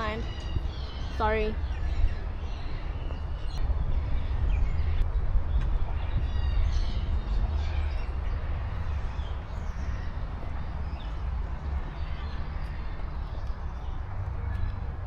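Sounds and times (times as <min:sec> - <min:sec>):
birds chirping and calling: 0:00.0 - 0:03.6
low rumble on microphone: 0:00.0 - 0:15.0.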